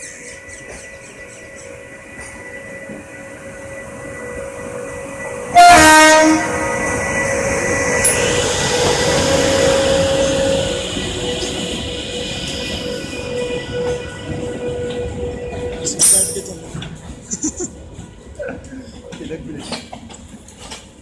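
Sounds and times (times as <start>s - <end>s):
train running noise: 0.0s - 21.0s
train horn blast: 4.2s - 7.1s, 13.2s - 16.4s.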